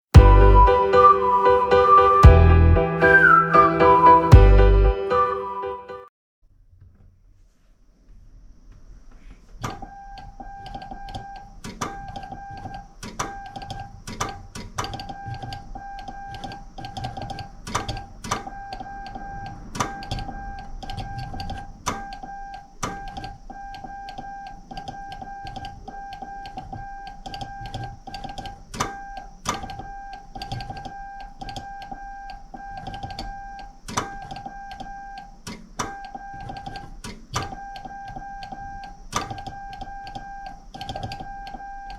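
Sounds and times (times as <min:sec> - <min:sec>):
morse key clicks: 0:09.6 - 0:41.9
morse code beeps: 0:18.5 - 0:28.4, 0:29.0 - 0:41.9.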